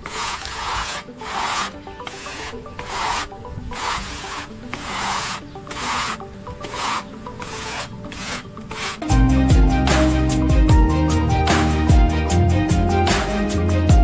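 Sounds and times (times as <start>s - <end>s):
hand scraping a hard surface: 0.0s - 9.2s
faint background music: 0.0s - 14.0s.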